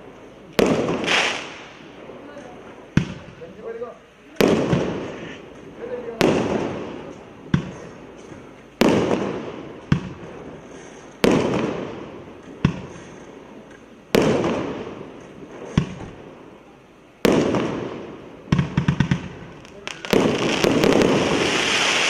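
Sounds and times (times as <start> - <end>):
firework bangs with rolling echo: 0.0 - 3.8, 4.4 - 22.0
small firework pops: 2.9 - 3.4, 4.4 - 10.4, 11.2 - 16.2, 17.2 - 22.0.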